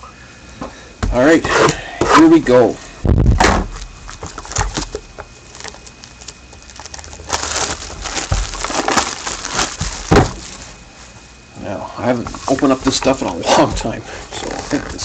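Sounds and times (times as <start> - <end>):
packaging rustling and scraping: 3.7 - 11.2, 12.2 - 15.0
knock on box: 9.8 - 10.4.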